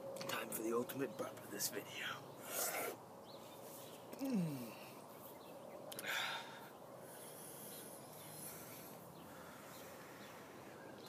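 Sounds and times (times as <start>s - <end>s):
faint breath hiss: 5.9s - 11.0s
noisy rush of breath: 6.0s - 11.0s.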